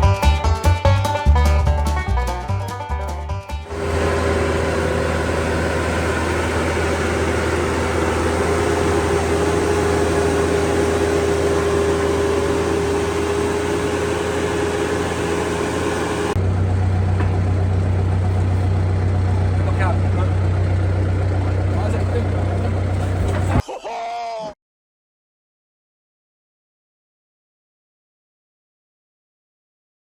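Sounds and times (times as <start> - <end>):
low engine drone: 3.6 - 23.6
constant whine: 3.7 - 23.6
loud even machinery noise: 3.7 - 23.6.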